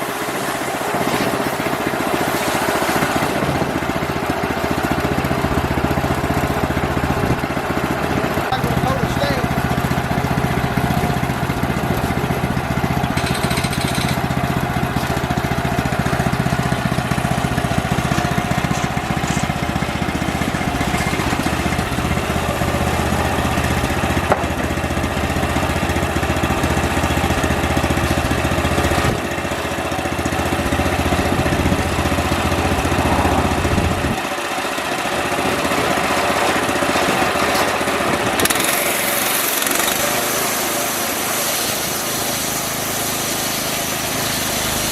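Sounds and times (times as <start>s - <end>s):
band sawmill engine running: 0.0s - 44.9s
hiss: 38.5s - 44.9s.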